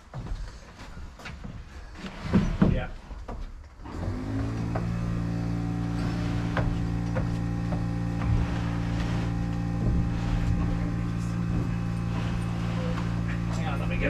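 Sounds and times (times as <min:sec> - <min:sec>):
air compressor motor running: 0:03.8 - 0:14.0.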